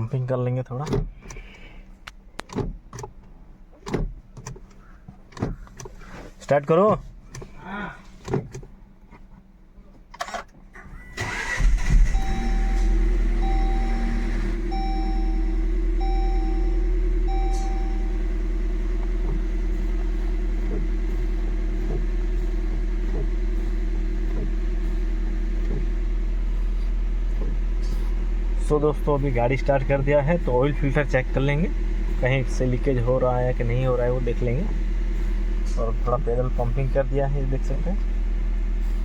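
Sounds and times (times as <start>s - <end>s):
car engine cranking and idling: 0.0s - 39.0s
electronic beep: 12.2s - 18.2s.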